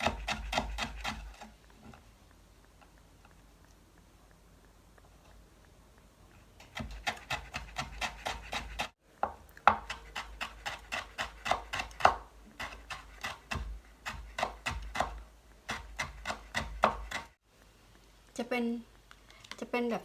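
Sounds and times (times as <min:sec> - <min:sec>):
knife chopping on cutting board: 0:00.0 - 0:01.5, 0:06.6 - 0:17.4.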